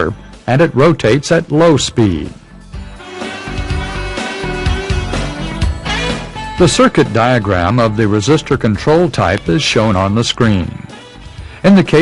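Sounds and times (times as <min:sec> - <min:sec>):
instrumental guitar music with beat: 0:02.9 - 0:07.2.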